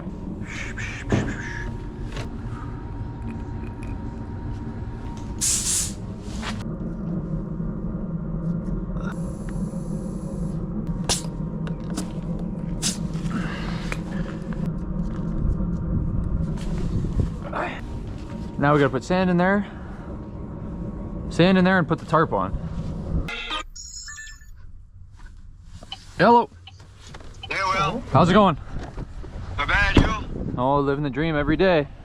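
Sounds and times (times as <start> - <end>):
short hiss: 5.4 - 6.0.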